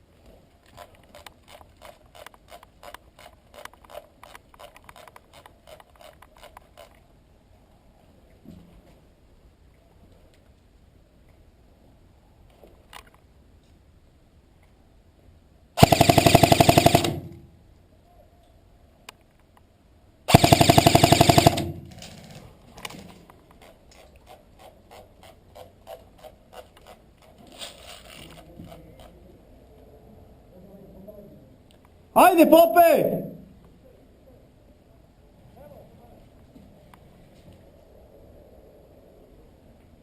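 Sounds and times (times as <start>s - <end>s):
airsoft gun firing bursts: 15.8s - 17.5s, 20.3s - 22.2s.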